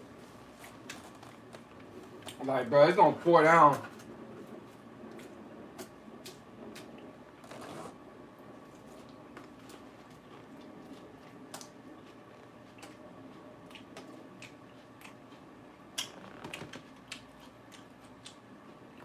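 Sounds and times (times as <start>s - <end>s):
lettuce being chewed: 4.7s - 7.9s, 8.6s - 19.0s.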